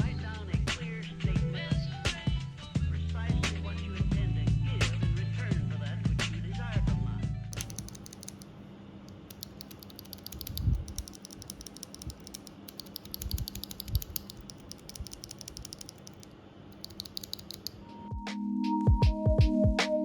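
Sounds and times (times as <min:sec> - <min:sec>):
mechanical keyboard typing: 0:07.5 - 0:17.9.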